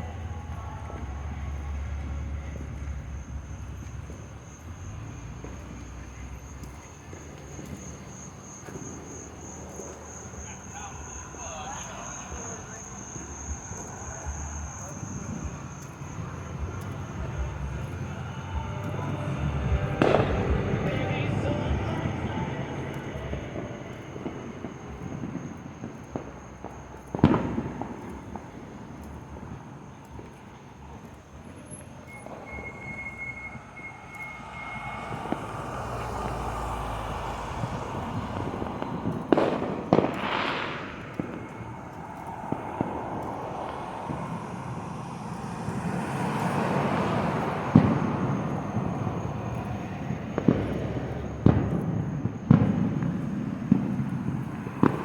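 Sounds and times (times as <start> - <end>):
fireworks bangs: 0.0 - 55.0
rushing noise: 10.3 - 26.2, 31.6 - 55.0.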